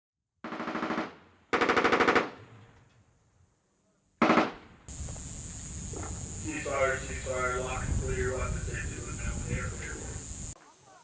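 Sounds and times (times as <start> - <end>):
machine gun automatic fire: 0.4 - 2.5, 4.2 - 4.6
steady hiss: 4.8 - 11.0.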